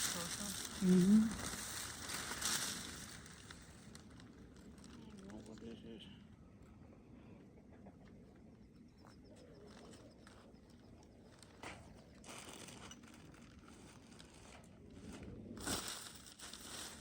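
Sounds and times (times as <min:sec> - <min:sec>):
packaging rustling: 0:00.0 - 0:05.6.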